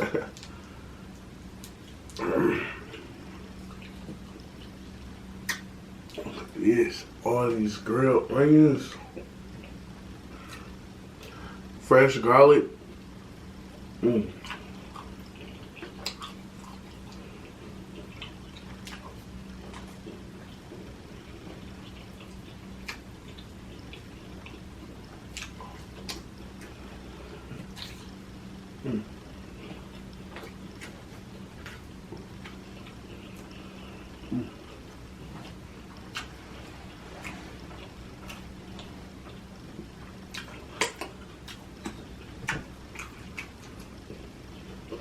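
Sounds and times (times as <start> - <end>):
steady low hum: 0.0 - 45.0
wet mouth chewing smacks: 5.4 - 6.5, 14.3 - 26.8, 27.5 - 28.6, 29.6 - 45.0.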